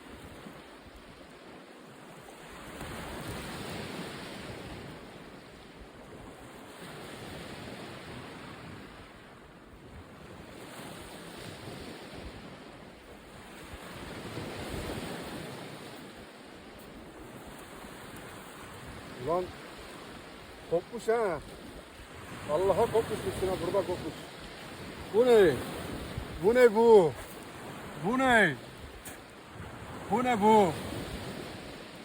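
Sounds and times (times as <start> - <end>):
sea waves washing in: 10.1 - 32.0
wind buffeting microphone: 21.5 - 32.0.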